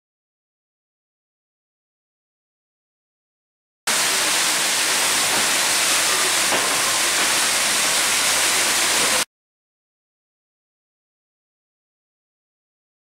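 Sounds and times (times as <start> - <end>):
loud rushing hiss: 3.9 - 9.3.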